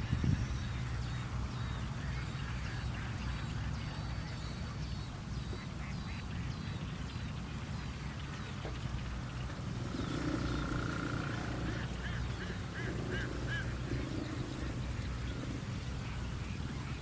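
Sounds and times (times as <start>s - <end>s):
bird chirping: 0.0s - 17.0s
low steady rumble: 0.0s - 17.0s.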